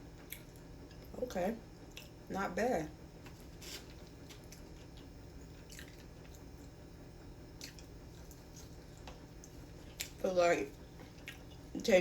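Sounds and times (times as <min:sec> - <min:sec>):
person chewing: 0:00.2 - 0:01.1, 0:03.4 - 0:06.8, 0:07.6 - 0:10.2, 0:11.0 - 0:11.7.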